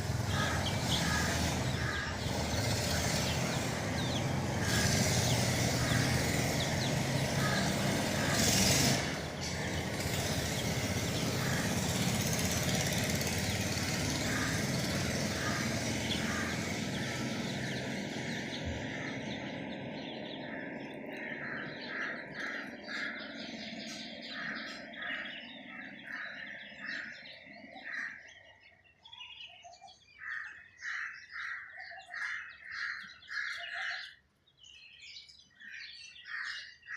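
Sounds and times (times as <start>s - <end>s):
steady vehicle noise: 0.0s - 29.5s.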